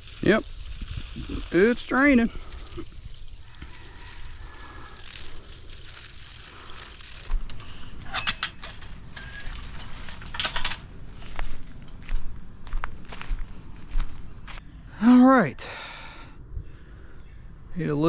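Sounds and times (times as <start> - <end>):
low outdoor background noise: 0.0 - 18.0
footsteps crunching dry leaves: 9.4 - 14.6.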